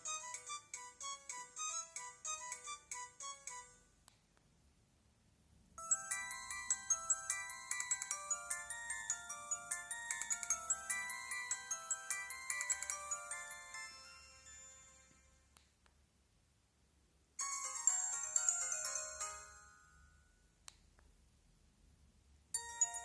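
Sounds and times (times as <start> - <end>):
ringtone melody of short high notes: 0.0 - 3.8, 5.8 - 15.5, 17.4 - 20.1, 22.6 - 23.0.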